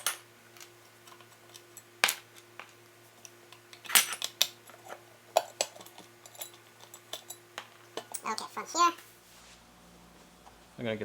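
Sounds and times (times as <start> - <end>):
metal tools clicking and clinking: 0.0 - 8.6
faint steady hum: 0.0 - 11.0.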